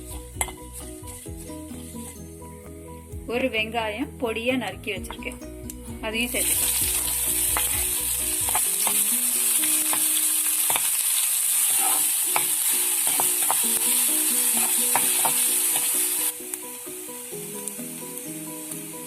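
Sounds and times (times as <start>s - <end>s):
onion sizzling in hot oil: 0.0s - 2.5s, 5.1s - 19.0s
spoon scraping pan: 6.4s - 10.9s, 11.5s - 16.2s.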